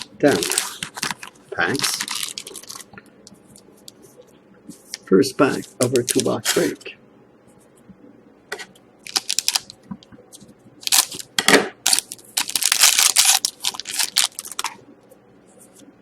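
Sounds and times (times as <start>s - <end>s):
wrapper crinkling and tearing: 0.0s - 2.9s, 5.8s - 6.8s, 9.0s - 9.8s, 10.8s - 14.8s.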